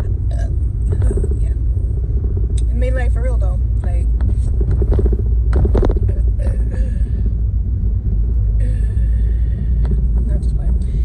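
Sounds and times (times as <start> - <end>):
low rumble of road traffic: 0.0 - 11.0.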